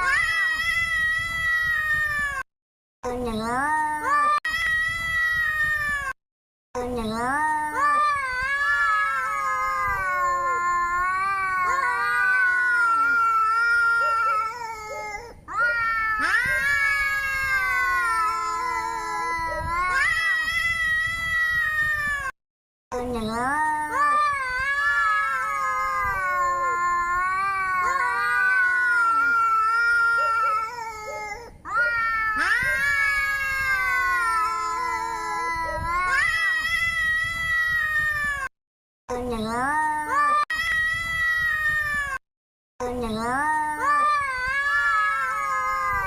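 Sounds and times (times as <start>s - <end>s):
cat yowling: 8.4s - 22.3s, 24.6s - 36.6s.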